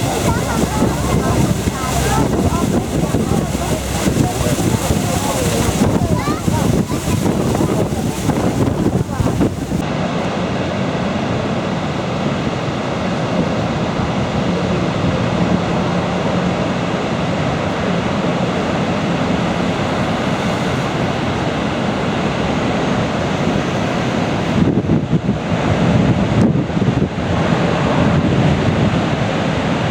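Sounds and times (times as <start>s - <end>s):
wind noise on microphone: 0.0s - 9.9s, 13.0s - 29.9s
waterfall rushing: 0.0s - 10.2s, 16.4s - 24.7s.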